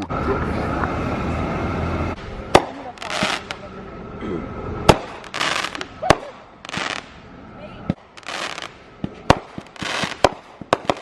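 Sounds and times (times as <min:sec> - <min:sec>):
firework hissing: 0:01.2 - 0:03.7, 0:04.8 - 0:07.3, 0:07.9 - 0:11.0
firework bangs: 0:02.2 - 0:03.6, 0:04.8 - 0:07.2, 0:07.8 - 0:11.0.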